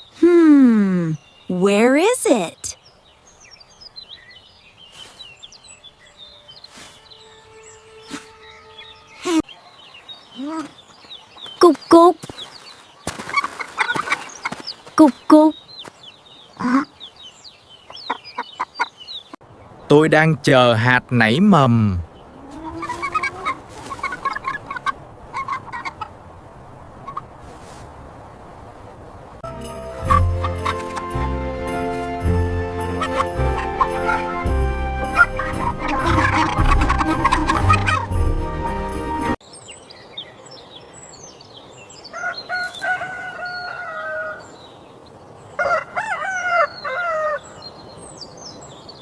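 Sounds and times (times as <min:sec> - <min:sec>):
small birds chirping: 0:00.0 - 0:26.1, 0:39.3 - 0:45.7, 0:46.6 - 0:49.0
hen clucking: 0:13.2 - 0:15.2, 0:16.6 - 0:17.0, 0:22.4 - 0:26.2, 0:27.0 - 0:27.3, 0:30.0 - 0:31.3, 0:32.8 - 0:38.2
rooster crowing: 0:42.1 - 0:44.5, 0:45.6 - 0:47.4.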